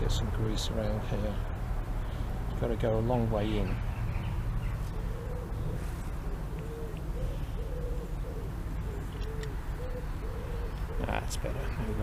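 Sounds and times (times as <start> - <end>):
pigeon cooing: 4.7 - 12.0.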